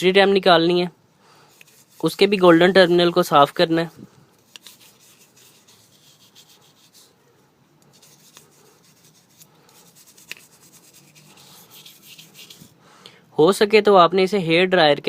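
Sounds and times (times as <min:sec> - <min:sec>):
small brush scrubbing: 0:01.5 - 0:07.2, 0:07.8 - 0:12.8.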